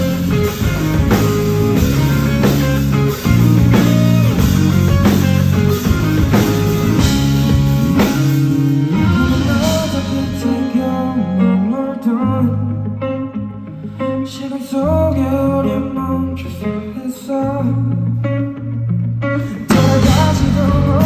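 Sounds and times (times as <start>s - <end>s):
steady drum beat: 0.0s - 10.5s, 19.7s - 21.0s
sustained chords: 0.0s - 13.8s.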